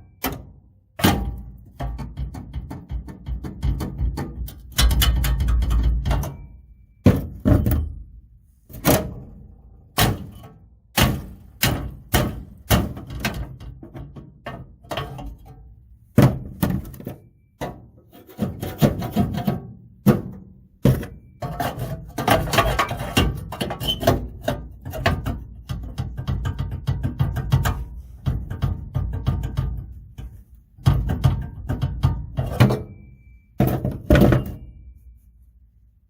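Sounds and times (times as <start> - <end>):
hammer striking car body metal: 7.0 - 8.0, 9.9 - 13.4.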